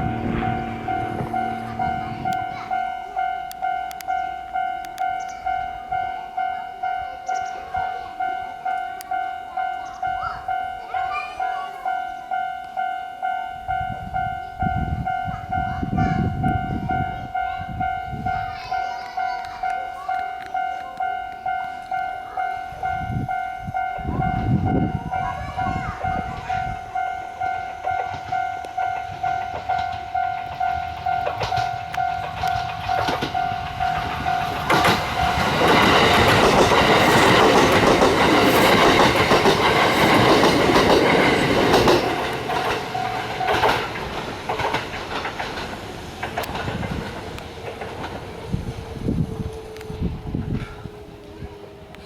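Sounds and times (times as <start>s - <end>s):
low rumble: 0.0s - 2.5s
level-crossing warning bell dinging: 0.0s - 52.0s
train rumbling: 0.0s - 52.0s
train wheels clacking over rails: 25.2s - 51.3s.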